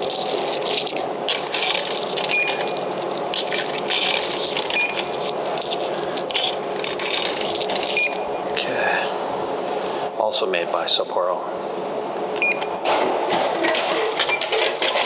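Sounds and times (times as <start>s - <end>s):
coins clinking into vending machine: 0.0s - 8.2s, 13.6s - 15.0s.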